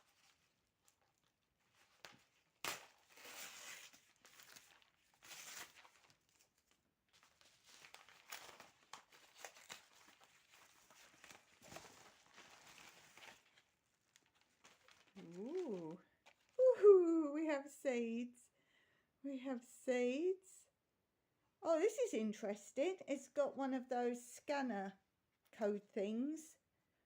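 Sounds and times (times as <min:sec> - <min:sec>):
sharp wrapping crackle: 0:00.0 - 0:16.6
parcel wrapping crinkling and tearing: 0:00.0 - 0:16.7.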